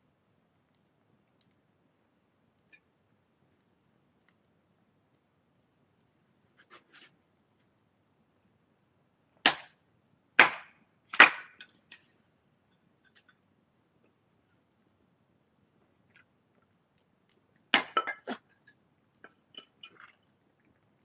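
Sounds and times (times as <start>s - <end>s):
axe strikes splitting firewood: 9.4s - 9.8s, 10.4s - 11.7s, 17.7s - 18.1s.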